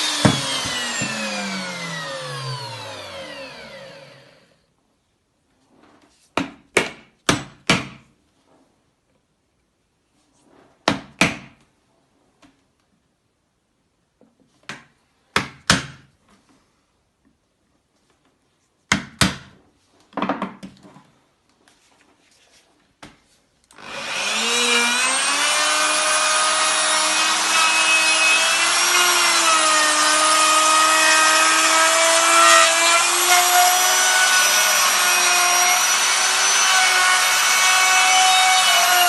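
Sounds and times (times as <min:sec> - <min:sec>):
milling machine motor spinning down: 0:00.0 - 0:04.4, 0:23.8 - 0:29.1.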